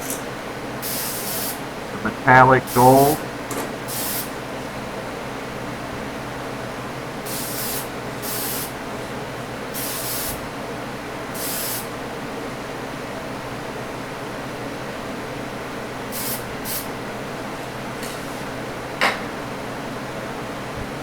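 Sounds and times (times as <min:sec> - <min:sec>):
steady background hum: 0:00.0 - 0:07.2
spray paint hissing: 0:07.3 - 0:08.7, 0:09.8 - 0:10.4, 0:11.4 - 0:11.8, 0:16.2 - 0:16.8.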